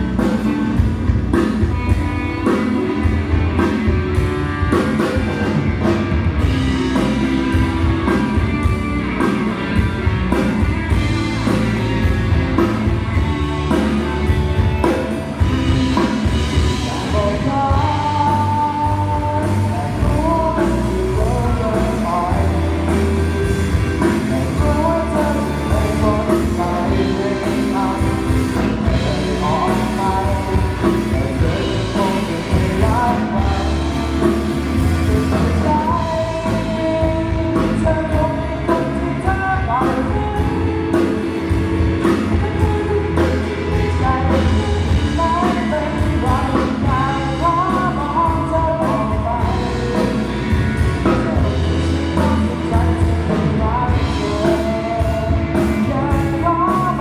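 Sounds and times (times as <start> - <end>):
rock band playing: 0.0 - 57.0
person singing: 9.2 - 57.0.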